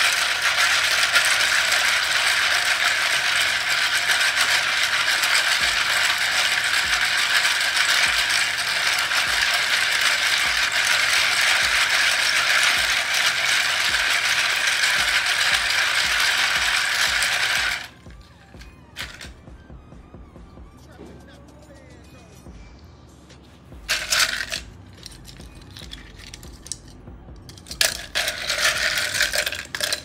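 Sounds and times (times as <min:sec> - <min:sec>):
plastic keycaps clattering: 0:23.9 - 0:30.0.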